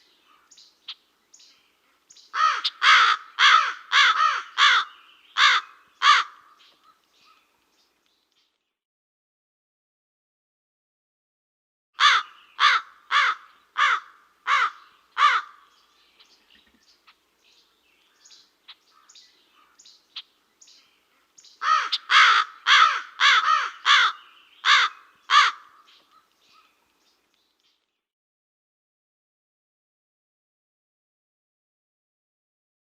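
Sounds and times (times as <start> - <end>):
soft bird calls and clicks: 0.0 - 2.8, 4.7 - 8.8, 15.6 - 22.1, 23.8 - 28.1
crow cawing: 2.4 - 6.6, 12.0 - 15.7, 21.6 - 25.9.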